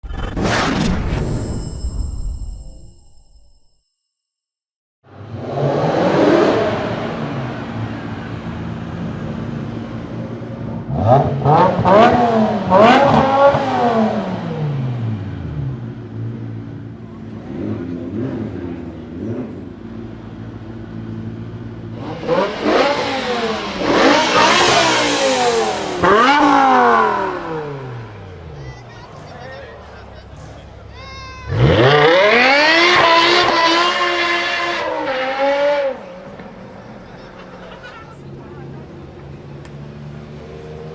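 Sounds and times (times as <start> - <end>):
car engine idling and revving: 5.1 - 40.9.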